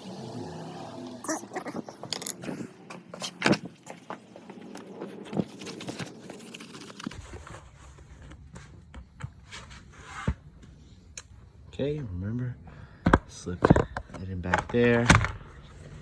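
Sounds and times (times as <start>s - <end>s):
plastic panels clicking into place: 13.1s - 15.4s.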